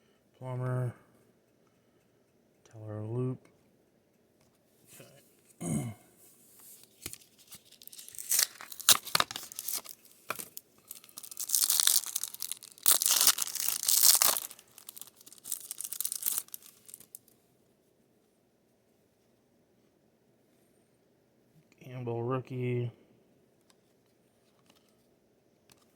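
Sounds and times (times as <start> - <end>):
foil wrapper tearing and crinkling: 7.0 - 17.3.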